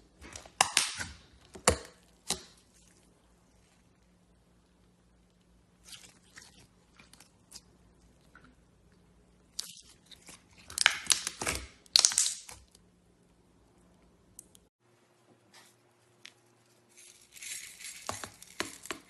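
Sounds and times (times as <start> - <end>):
slime crackling and popping: 10.5 - 12.7.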